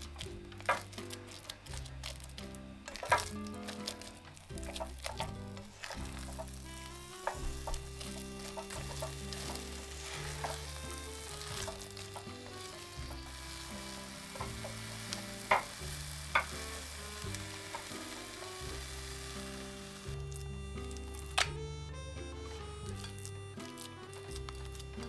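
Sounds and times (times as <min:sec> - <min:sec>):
food sizzling in a pan: 0:00.0 - 0:21.4
background music: 0:00.0 - 0:25.0.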